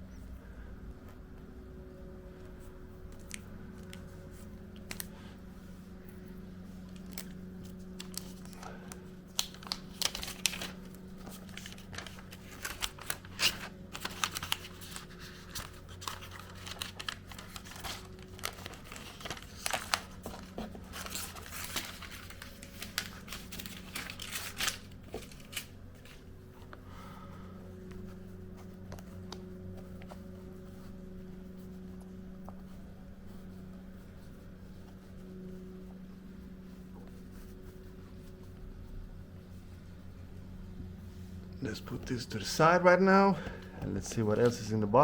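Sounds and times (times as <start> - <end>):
low steady hum: 0.0 - 45.0
packaging crinkling and tearing: 3.1 - 4.0, 4.7 - 5.2, 6.8 - 26.2.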